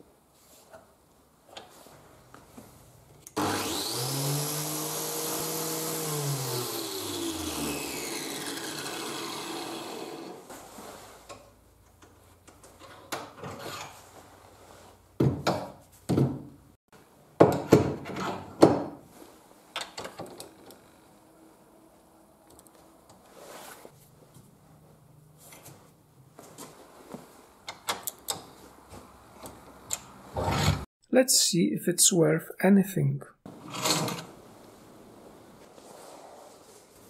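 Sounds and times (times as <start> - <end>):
power tool motor whine: 3.4 - 10.4.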